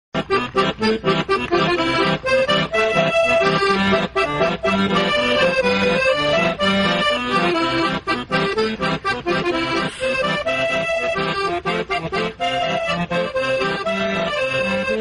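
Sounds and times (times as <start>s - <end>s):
accordion playing folk tune: 0.2s - 15.0s.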